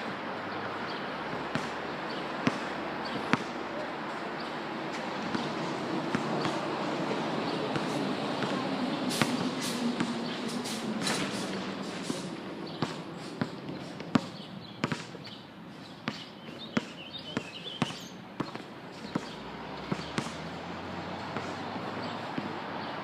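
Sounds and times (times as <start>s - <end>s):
basketball bouncing: 0.6s - 3.8s, 5.2s - 6.7s, 7.7s - 8.6s, 12.7s - 15.2s, 16.0s - 20.4s, 21.3s - 22.6s.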